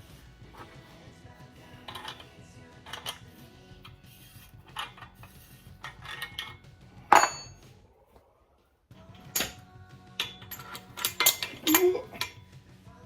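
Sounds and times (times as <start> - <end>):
metal parts clinking: 1.8 - 7.6, 9.0 - 9.6, 10.2 - 12.4.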